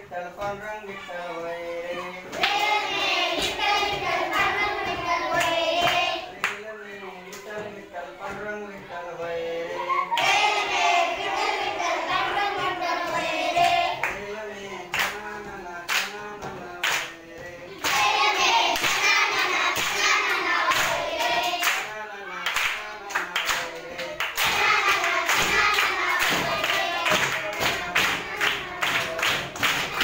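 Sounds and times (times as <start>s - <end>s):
children singing: 0.4s - 30.0s
children clapping: 2.3s - 6.6s, 14.9s - 15.2s, 15.9s - 16.2s, 16.8s - 17.2s, 17.8s - 30.0s.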